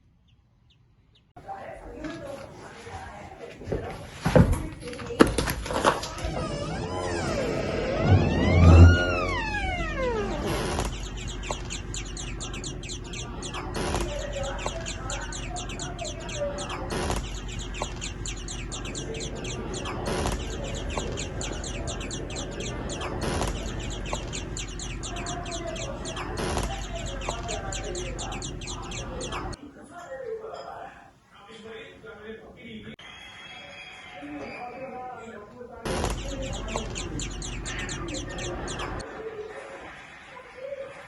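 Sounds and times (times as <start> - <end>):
rapid high bird chirping: 6.1 - 29.6, 35.9 - 39.1
bird clucking: 8.4 - 29.6, 35.9 - 39.1.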